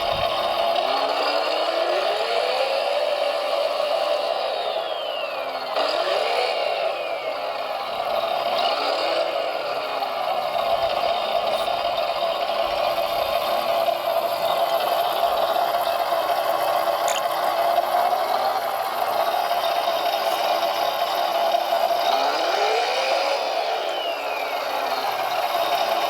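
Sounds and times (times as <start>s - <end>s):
electric motor whirring: 16.5s - 17.7s.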